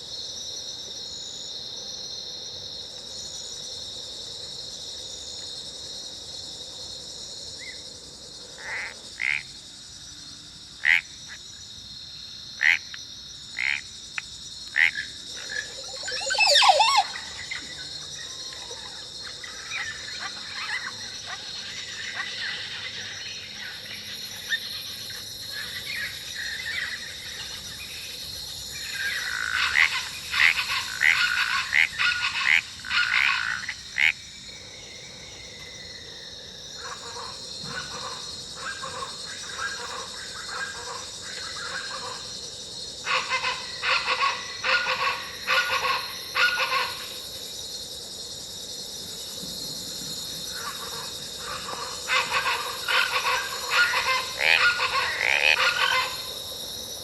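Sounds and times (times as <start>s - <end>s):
high insect drone: 0.0s - 57.0s
rapid pulsing animal calls: 14.8s - 17.8s, 50.6s - 56.4s.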